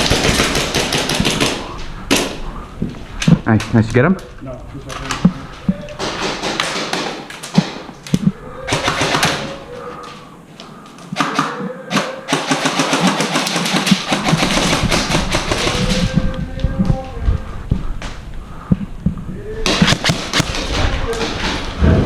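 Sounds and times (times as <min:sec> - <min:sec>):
rapid clicks and knocks: 0:00.0 - 0:02.3, 0:06.0 - 0:09.4, 0:12.3 - 0:16.9.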